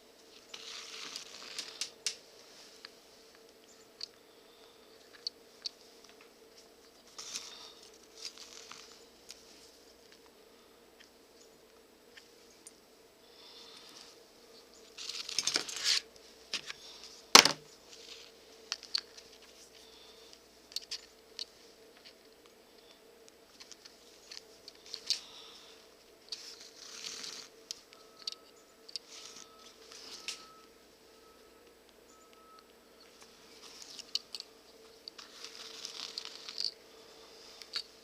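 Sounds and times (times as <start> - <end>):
leather handling clicks and rustles: 15.0 - 16.8, 33.1 - 36.8.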